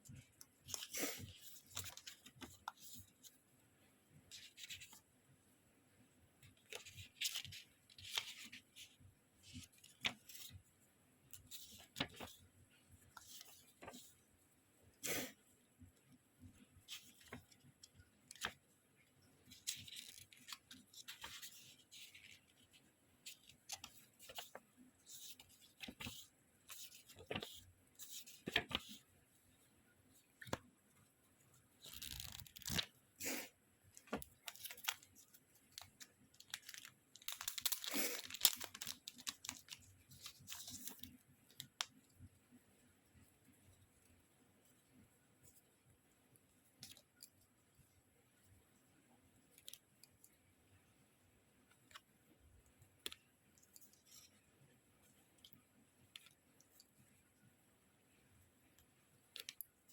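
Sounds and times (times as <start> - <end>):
packaging tearing and crinkling: 35.8 - 39.8.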